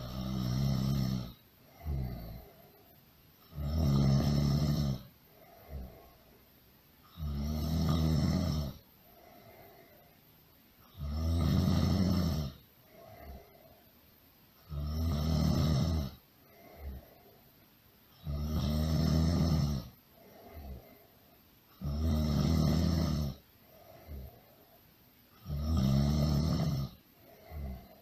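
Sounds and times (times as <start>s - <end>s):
person snoring loudly: 0.0s - 2.6s, 3.4s - 6.1s, 7.1s - 9.3s, 10.9s - 13.6s, 14.6s - 17.1s, 18.2s - 21.0s, 21.8s - 23.4s, 25.4s - 28.0s
soft breaths: 0.0s - 11.0s, 11.9s - 14.8s, 15.9s - 25.5s, 26.1s - 28.0s.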